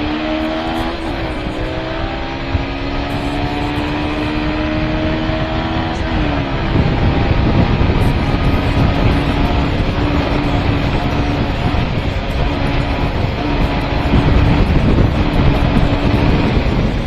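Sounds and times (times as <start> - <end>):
motorcycle engine running: 0.0 - 17.0
wind rushing on microphone: 0.0 - 17.0.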